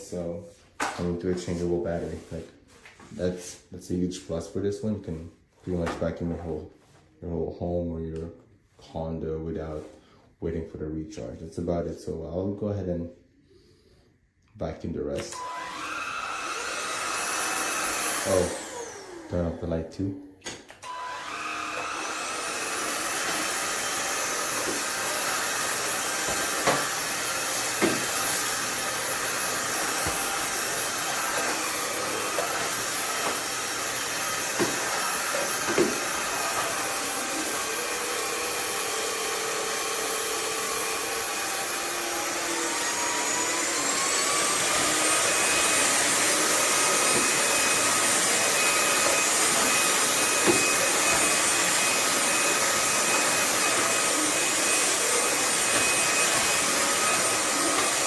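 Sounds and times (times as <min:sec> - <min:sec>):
vacuum cleaner whining: 0:15.2 - 0:58.0.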